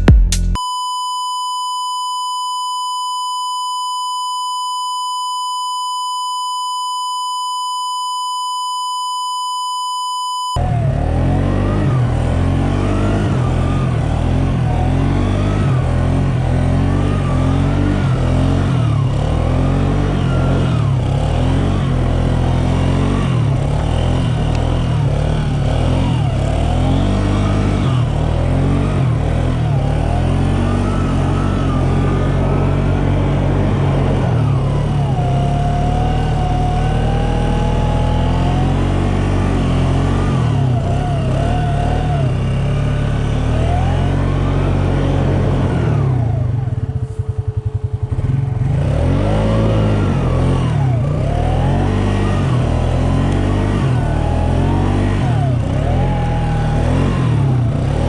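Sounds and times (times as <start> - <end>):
buzzy test-tone beep: 0.5 - 10.6
loud motor revving: 10.6 - 58.0.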